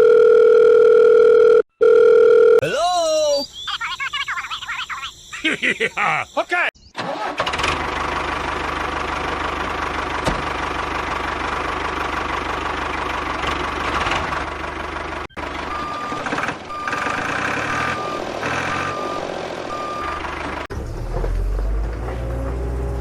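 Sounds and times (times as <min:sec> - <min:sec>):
vehicle engine running: 0:07.4 - 0:23.0
reversing alarm beeping: 0:15.4 - 0:20.3.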